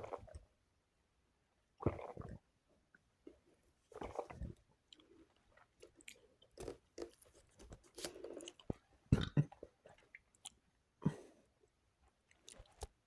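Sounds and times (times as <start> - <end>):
person sipping and swallowing: 1.9 - 2.4, 8.2 - 10.2.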